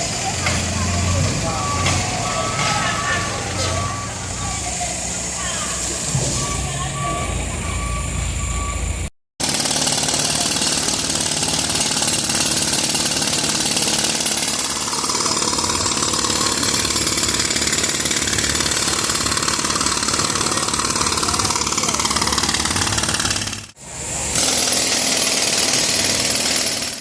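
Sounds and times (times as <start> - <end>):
truck engine running: 0.0 - 26.5
reversing beeper: 1.0 - 4.7, 5.9 - 9.1
jackhammer hammering pavement: 9.4 - 27.0.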